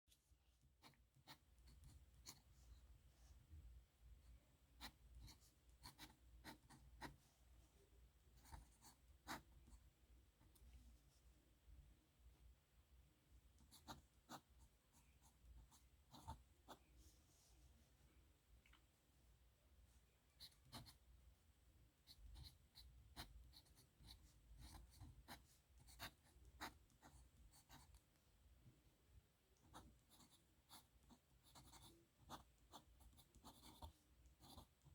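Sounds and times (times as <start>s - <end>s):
pen nib scratching on paper: 0.8s - 2.5s, 22.1s - 28.0s, 29.7s - 34.9s.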